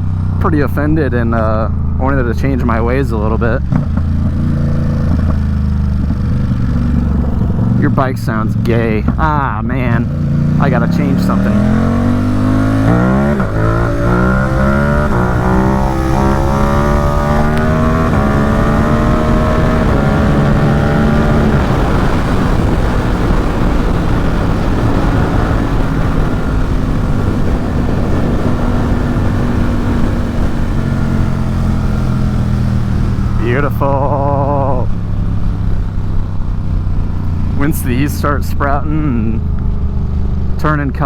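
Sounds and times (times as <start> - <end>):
motorcycle engine accelerating: 0.0 - 41.0
wind rush: 3.2 - 33.4.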